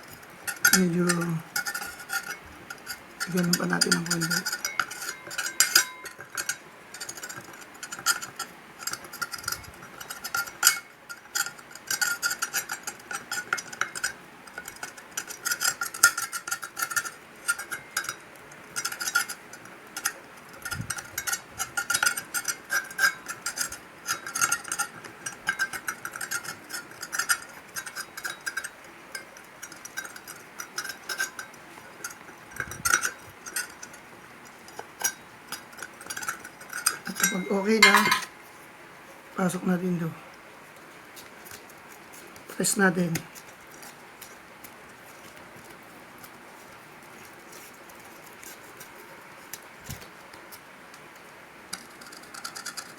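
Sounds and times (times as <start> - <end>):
metal tools scraping metal: 0.0 - 38.4, 41.5 - 45.4.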